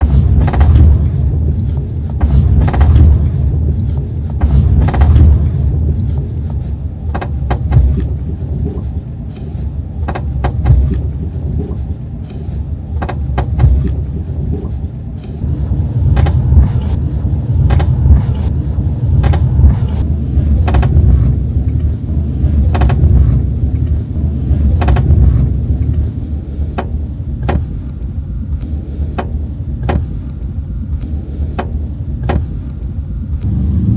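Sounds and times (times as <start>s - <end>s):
car road rumble: 0.0s - 33.9s
trim creaks and clicks: 0.3s - 6.3s, 7.1s - 12.4s, 16.1s - 17.0s, 17.6s - 21.9s, 22.5s - 24.0s, 24.6s - 26.0s, 26.8s - 33.5s.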